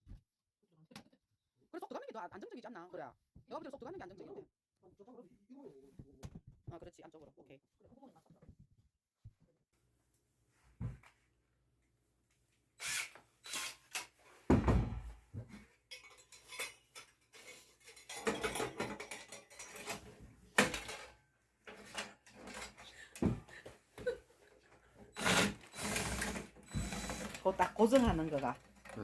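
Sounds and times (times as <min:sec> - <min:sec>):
sheet metal stove parts clanking: 0:15.9 - 0:23.4.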